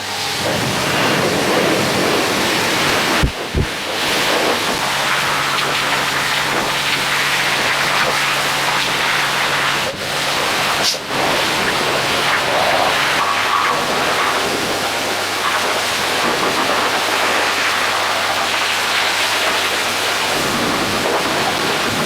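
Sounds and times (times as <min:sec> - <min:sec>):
pressure washer jet hissing: 0:00.0 - 0:22.0
pump humming: 0:00.0 - 0:22.0.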